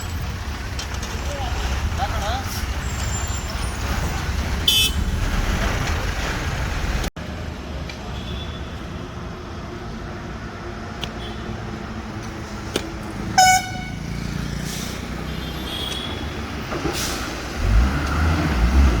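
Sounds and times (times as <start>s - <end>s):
road traffic noise: 0.0s - 19.0s
shrill truck horn blast: 13.3s - 14.3s.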